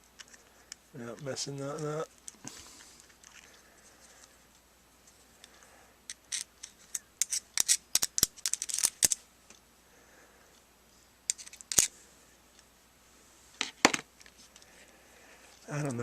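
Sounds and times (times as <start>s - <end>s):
small gear parts clicking: 6.1s - 9.2s.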